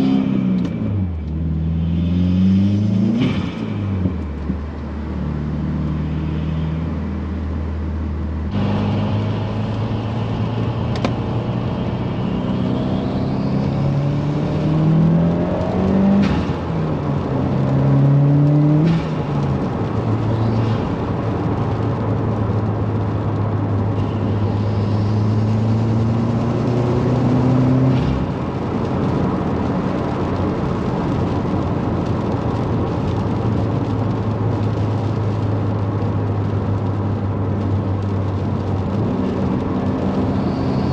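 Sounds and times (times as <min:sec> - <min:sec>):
car engine accelerating: 0:00.0 - 0:40.9.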